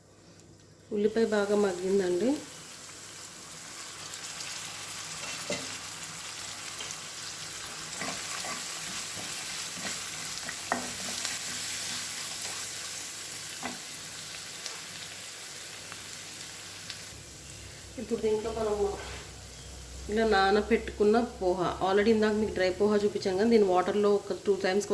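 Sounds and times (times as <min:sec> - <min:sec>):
onions sizzling in oil: 0:00.2 - 0:24.9
spatula scraping a pan: 0:07.7 - 0:12.7.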